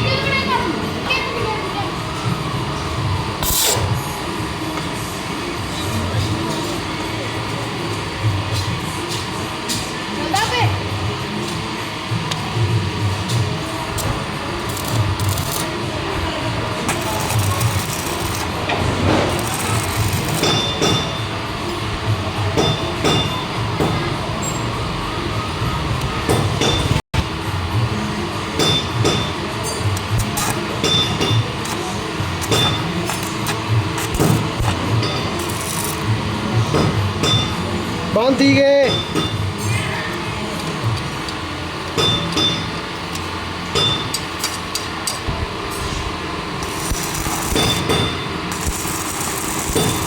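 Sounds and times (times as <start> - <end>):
workshop noise: 0.0 - 50.0
arc welding crackling: 3.4 - 4.0, 13.3 - 21.0, 29.8 - 36.6, 45.9 - 50.0
hammer striking metal: 17.0 - 21.3, 22.6 - 24.0, 28.6 - 31.8, 32.4 - 36.0, 36.7 - 37.6, 38.8 - 39.7, 42.0 - 42.9, 43.7 - 44.6, 46.6 - 50.0.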